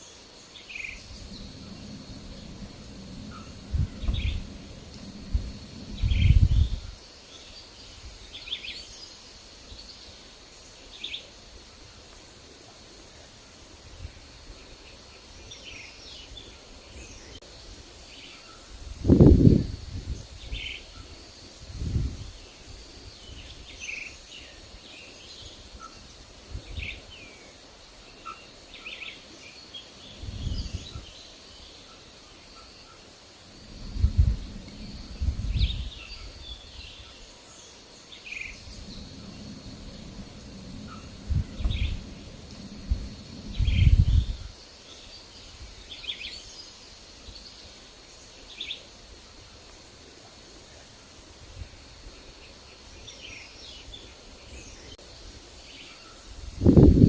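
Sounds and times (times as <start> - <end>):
faint insect hum: 0.0 - 57.0
wind buffeting microphone: 0.7 - 7.1, 18.8 - 23.8, 25.4 - 27.2, 30.0 - 31.1, 33.5 - 37.1, 38.3 - 44.6, 56.4 - 57.0.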